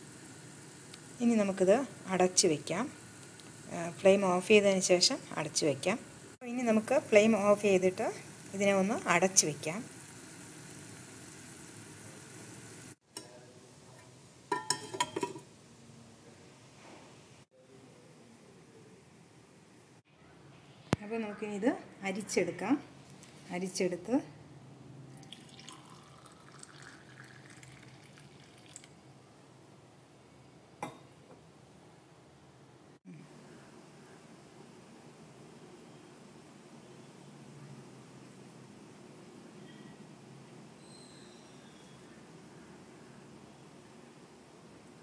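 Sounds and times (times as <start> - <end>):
faint hiss: 0.0 - 14.6, 15.2 - 21.5
lid clinking on steel pot: 14.5 - 15.5
coffee trickling and dripping: 25.1 - 29.2.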